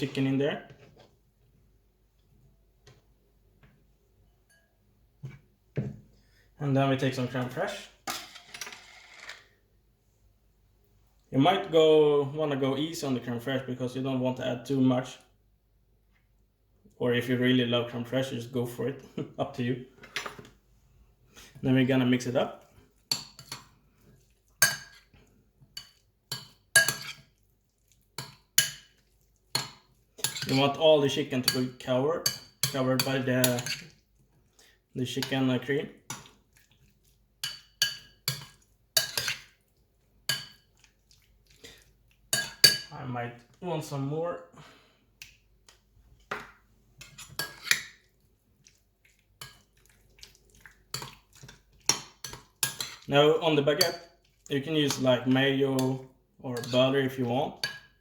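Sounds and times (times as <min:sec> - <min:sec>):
metal utensil scraping a bowl: 0:08.1 - 0:09.5, 0:25.8 - 0:27.3, 0:28.2 - 0:30.8, 0:31.4 - 0:34.0, 0:37.4 - 0:39.5, 0:47.0 - 0:48.0
utensil clinking against a bowl: 0:25.8 - 0:27.2.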